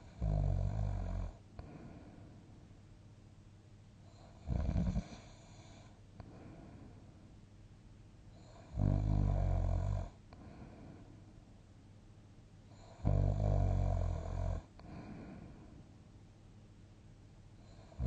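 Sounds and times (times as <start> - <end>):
person snoring: 0.0 - 2.1, 4.2 - 5.8, 8.4 - 10.6, 12.8 - 15.5
quiet breathing: 0.0 - 2.8, 4.0 - 7.5, 8.3 - 11.6, 12.6 - 16.2, 17.5 - 18.0.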